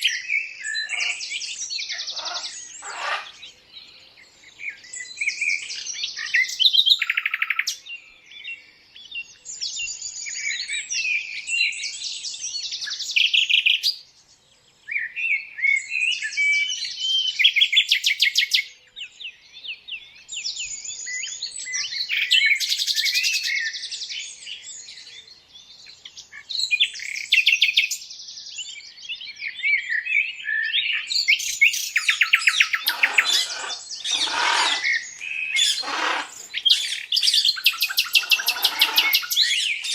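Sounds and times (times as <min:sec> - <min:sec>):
lower bird calls: 0:00.0 - 0:07.8, 0:31.1 - 0:39.9
birds chirping and trilling: 0:00.0 - 0:39.9.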